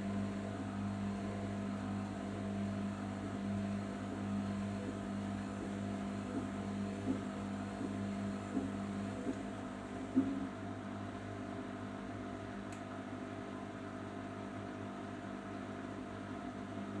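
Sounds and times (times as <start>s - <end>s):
washing machine motor hum: 0.0s - 12.6s.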